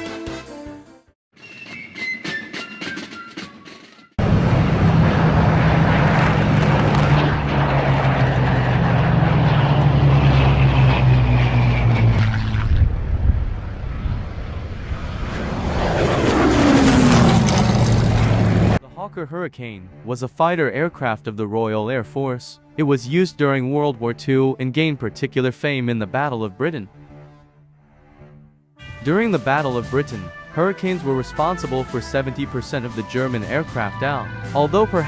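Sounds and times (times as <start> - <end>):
music: 0.0 - 4.2, 18.8 - 35.0
propeller plane engine running: 1.4 - 18.8, 29.6 - 35.0.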